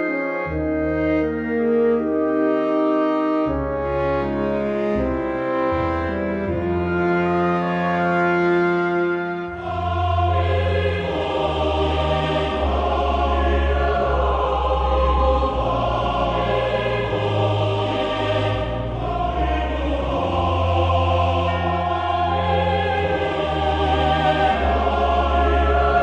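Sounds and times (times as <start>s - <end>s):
slow music with held chords: 0.0s - 26.0s
deep sustained bass notes: 9.5s - 26.0s.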